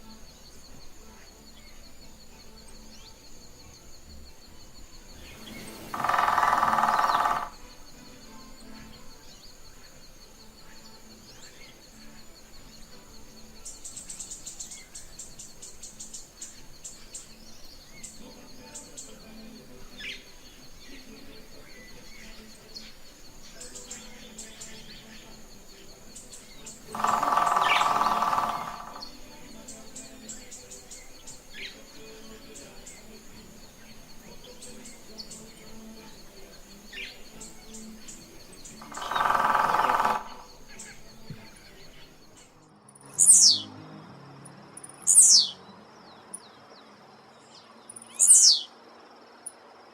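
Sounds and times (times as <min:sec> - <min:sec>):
songbirds chirping and trilling: 0:00.0 - 0:49.9
harsh bird call: 0:05.3 - 0:07.7, 0:26.7 - 0:29.2, 0:38.6 - 0:41.0.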